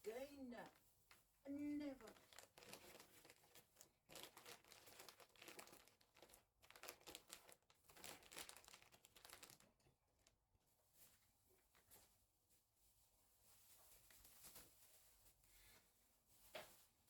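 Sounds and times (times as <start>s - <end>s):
rubbish crinkling and rustling: 0.0s - 10.3s.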